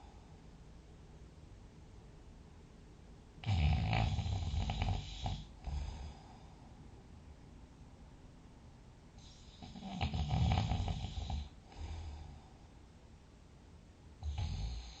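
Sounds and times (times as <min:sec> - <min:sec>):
loud fluttering snoring: 0:09.6 - 0:11.6.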